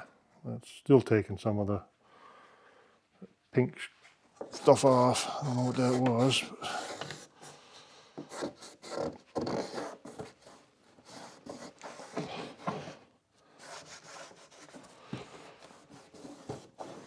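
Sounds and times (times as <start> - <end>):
rag rubbing on surface: 4.4 - 7.6, 8.3 - 13.0, 13.6 - 17.0.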